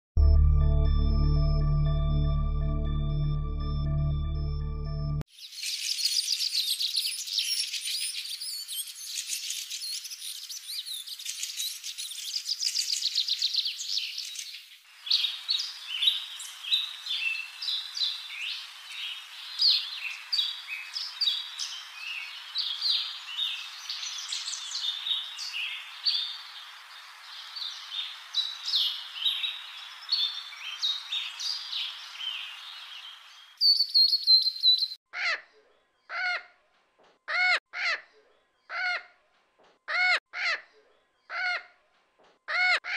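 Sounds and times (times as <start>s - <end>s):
songbirds chirping and singing: 5.4s - 35.0s.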